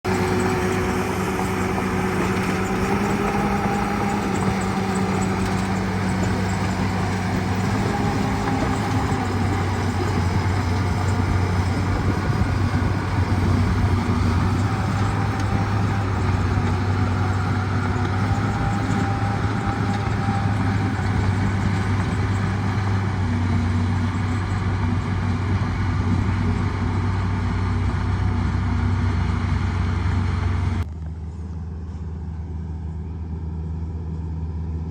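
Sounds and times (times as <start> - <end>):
bulldozer diesel engine running: 0.0 - 34.9.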